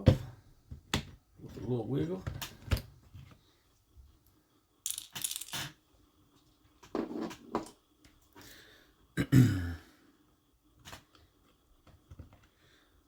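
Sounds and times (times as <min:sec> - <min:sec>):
small parts clicking and rattling: 0:04.8 - 0:05.8.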